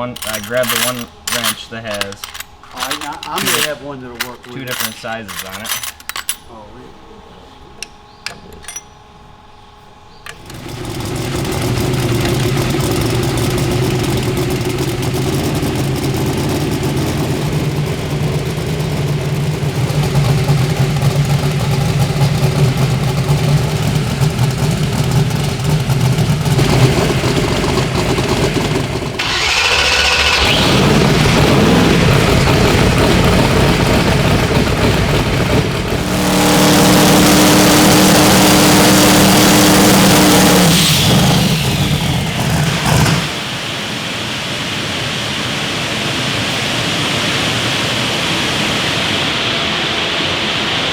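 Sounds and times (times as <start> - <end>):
engine starting and idling: 0.0 - 6.4, 10.3 - 43.7
tool clinks: 0.0 - 6.5, 7.8 - 9.1
engine revving: 10.3 - 43.5.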